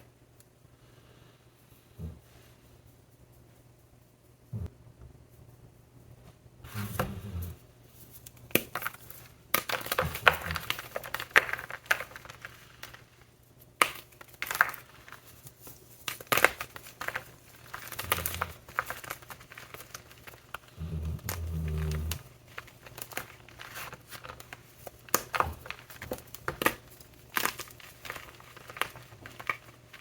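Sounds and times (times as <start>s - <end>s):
chalk blocks crunching and crumbling: 8.5s - 13.2s, 13.8s - 30.0s.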